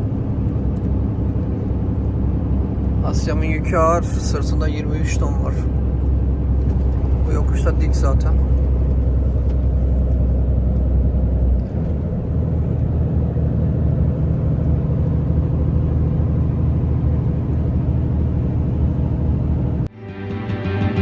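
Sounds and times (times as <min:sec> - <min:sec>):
truck engine running under load: 0:00.0 - 0:19.9
background music: 0:19.9 - 0:21.0.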